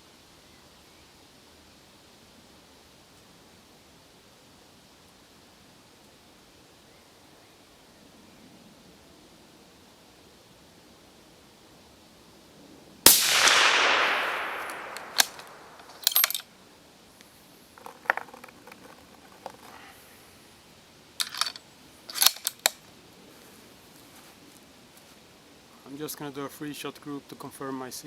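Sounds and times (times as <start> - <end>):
suppressed rifle shot: 13.1 - 16.4
rifle bolt clicking: 13.2 - 16.4.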